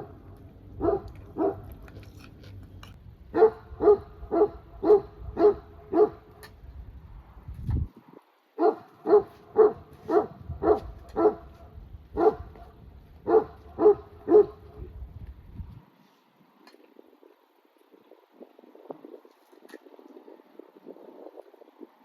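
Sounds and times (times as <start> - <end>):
dog barking: 0.8 - 1.7, 3.4 - 6.3, 8.6 - 14.9.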